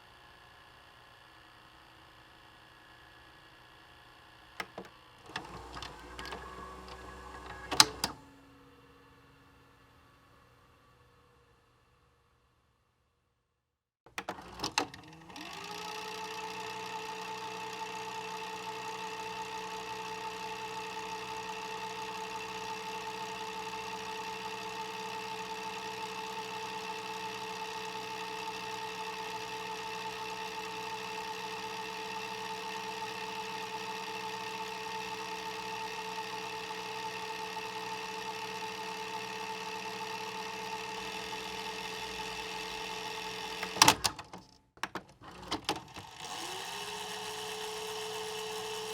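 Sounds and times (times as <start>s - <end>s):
tape mechanism whirring: 4.6s - 8.2s, 14.2s - 44.5s, 45.2s - 48.9s.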